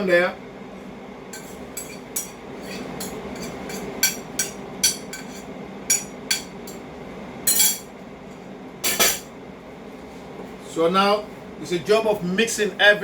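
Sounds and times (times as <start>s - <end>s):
utensil clinking against pot: 1.4s - 6.8s.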